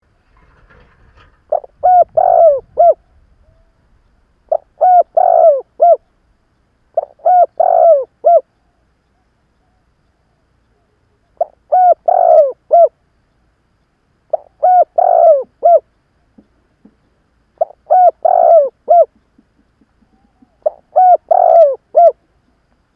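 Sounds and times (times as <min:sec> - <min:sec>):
dove cooing: 0:01.2 - 0:06.1, 0:06.9 - 0:08.8, 0:09.6 - 0:13.0, 0:14.3 - 0:15.9, 0:17.6 - 0:19.2, 0:19.8 - 0:22.4.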